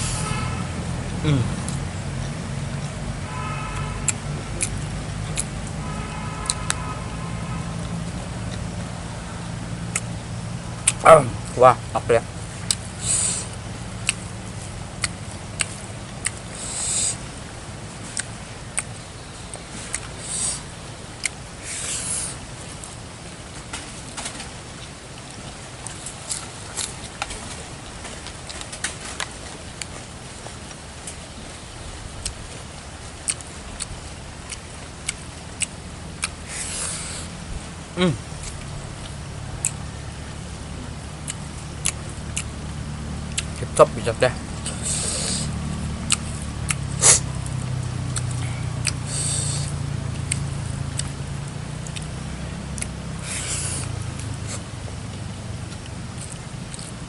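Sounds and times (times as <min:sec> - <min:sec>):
steady background hiss: 0:00.0 - 0:57.0
steady low hum: 0:00.0 - 0:57.0
person chewing with wet smacks: 0:01.4 - 0:03.1, 0:03.7 - 0:57.0
hissy slurp: 0:13.0 - 0:13.6, 0:16.5 - 0:17.3, 0:19.8 - 0:20.8, 0:21.6 - 0:22.4, 0:36.4 - 0:37.4, 0:44.6 - 0:47.3, 0:48.9 - 0:50.5, 0:53.2 - 0:54.7.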